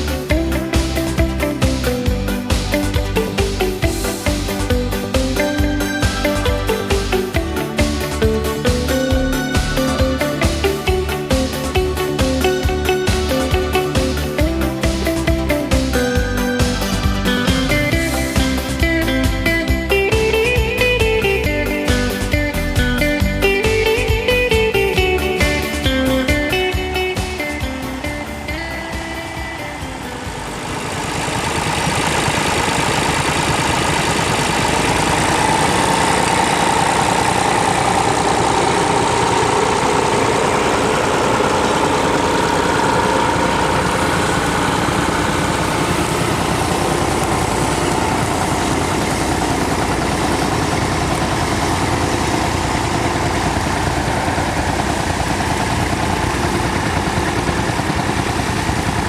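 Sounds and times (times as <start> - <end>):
tractor engine running: 0.0 - 59.0.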